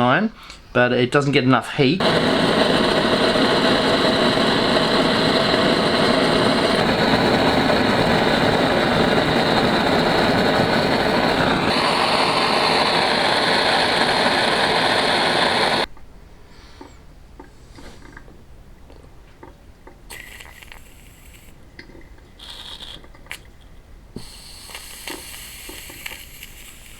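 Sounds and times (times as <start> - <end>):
blowtorch flame hissing: 2.0 - 15.9, 20.1 - 21.6, 24.2 - 26.9.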